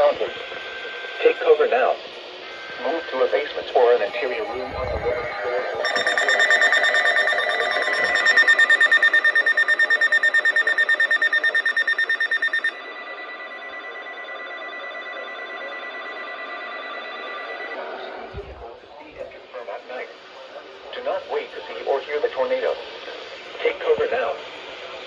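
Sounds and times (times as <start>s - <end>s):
steady electronic tone: 4.2s - 17.7s
electronic alarm pulsing: 4.9s - 17.8s.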